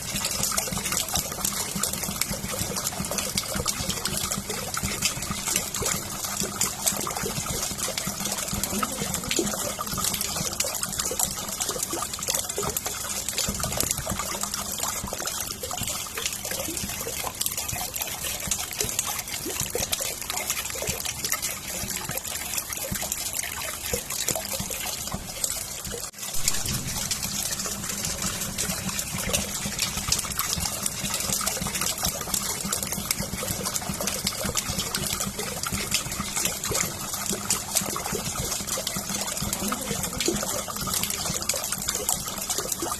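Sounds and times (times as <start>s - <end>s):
steady rain falling: 26.1s - 36.1s.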